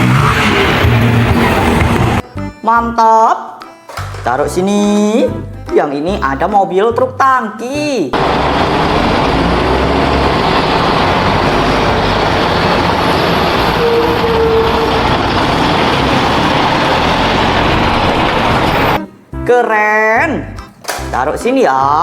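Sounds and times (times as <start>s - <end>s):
heavy truck engine rumbling: 0.0s - 2.2s, 8.2s - 19.0s.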